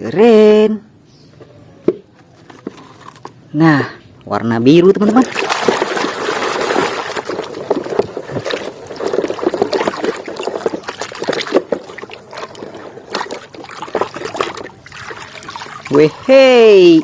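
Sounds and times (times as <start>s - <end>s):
water sloshing and splashing: 4.9s - 17.0s.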